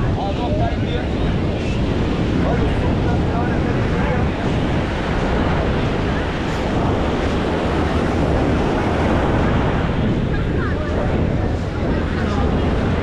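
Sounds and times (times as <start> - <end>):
ocean surf washing: 0.0 - 13.0
wind buffeting microphone: 0.0 - 13.0.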